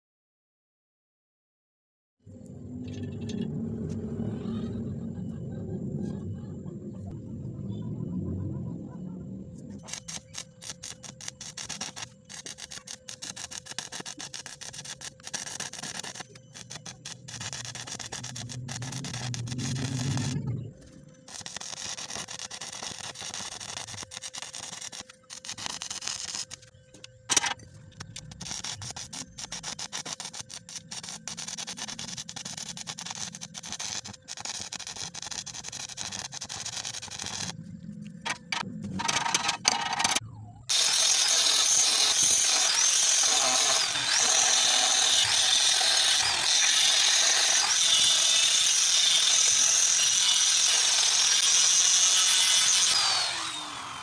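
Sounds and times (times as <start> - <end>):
welding arc crackling: 9.8 - 20.5, 21.3 - 26.7, 27.3 - 37.6, 40.7 - 53.7
loud power tool running: 40.7 - 54.0.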